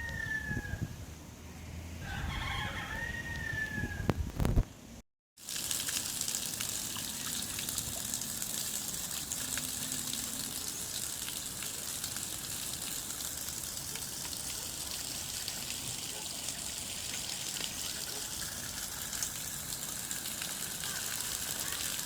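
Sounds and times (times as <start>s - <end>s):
water running: 5.4s - 22.0s
sharp drip ticks: 5.5s - 22.0s.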